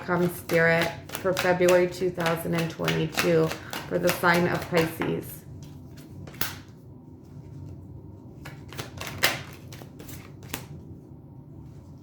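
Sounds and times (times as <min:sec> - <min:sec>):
cards being shuffled: 0:00.1 - 0:10.8
crisp card clicks and flicks: 0:06.3 - 0:06.7.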